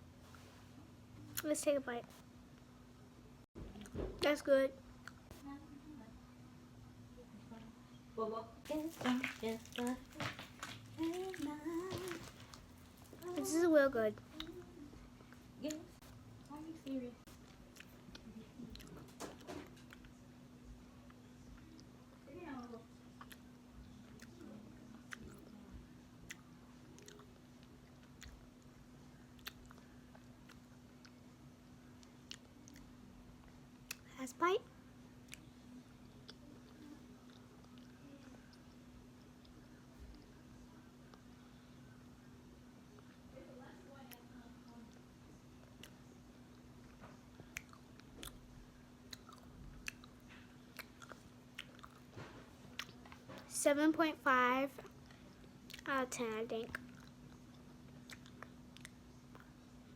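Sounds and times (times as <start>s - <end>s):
steady low hum: 0.0s - 59.9s
chewing gummy candy: 8.7s - 13.6s, 17.3s - 20.2s, 21.1s - 34.1s, 35.2s - 41.7s, 44.8s - 53.5s, 54.9s - 55.9s, 56.6s - 59.8s
wet mouth clicks and smacks: 47.4s - 48.4s, 58.0s - 59.5s.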